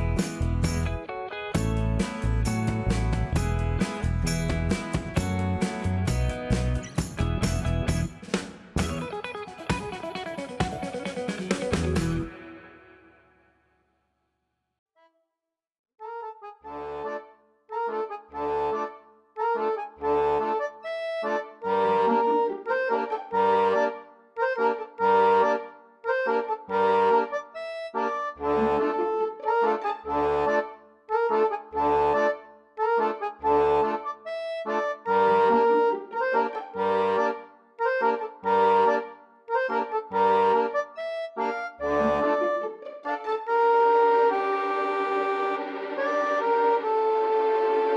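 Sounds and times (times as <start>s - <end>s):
bass beat: 0.0s - 1.0s, 1.6s - 8.2s, 8.8s - 9.1s, 11.5s - 12.3s
accordion-like melody: 0.0s - 13.4s, 16.0s - 47.9s.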